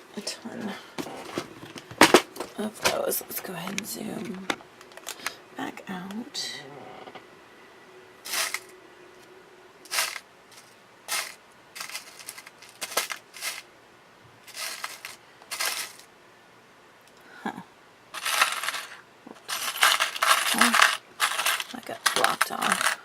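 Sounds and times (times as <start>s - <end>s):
small metal brads clinking: 9.9s - 13.7s, 14.5s - 16.1s, 18.2s - 23.0s.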